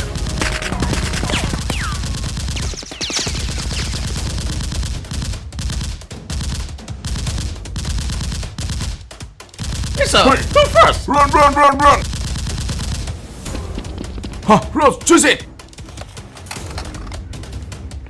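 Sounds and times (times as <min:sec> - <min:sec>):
automatic gunfire: 0:00.0 - 0:09.0, 0:09.6 - 0:13.2
falling whistles: 0:01.7 - 0:04.0.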